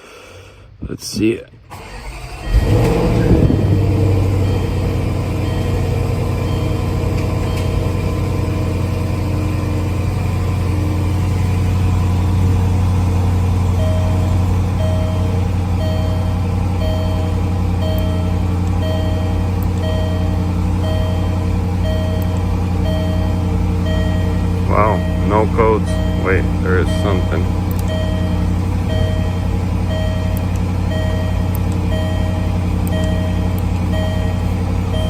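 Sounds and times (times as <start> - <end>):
car engine idling: 1.6 - 35.0
electronic warning beep: 2.4 - 8.2, 13.7 - 35.0.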